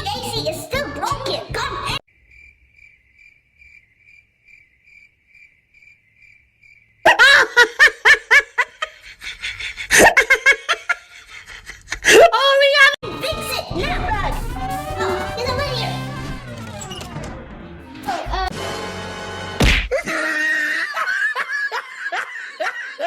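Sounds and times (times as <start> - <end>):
cricket chirping: 2.1 - 7.1
loud laughter: 7.1 - 12.9, 19.9 - 23.0.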